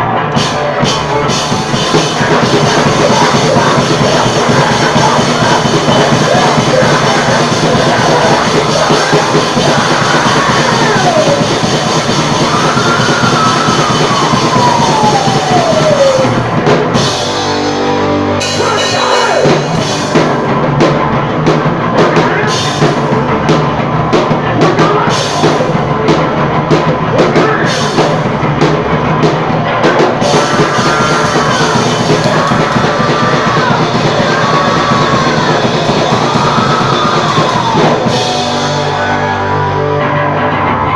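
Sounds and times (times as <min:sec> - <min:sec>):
loud rock music: 0:00.0 - 0:40.9.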